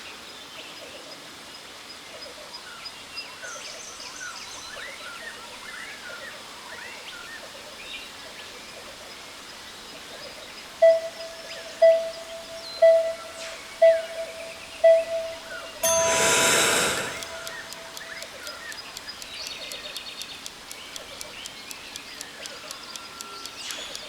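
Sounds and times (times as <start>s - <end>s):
thin high tone: 15.0s - 18.5s
waterfall rushing: 16.0s - 17.9s.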